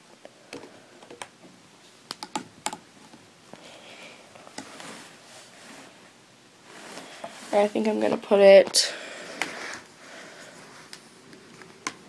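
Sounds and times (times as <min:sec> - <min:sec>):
soft rustling: 0:03.0 - 0:08.8.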